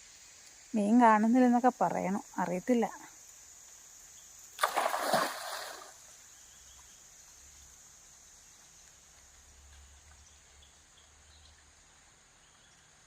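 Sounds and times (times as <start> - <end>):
net splashing into water: 4.6 - 6.0.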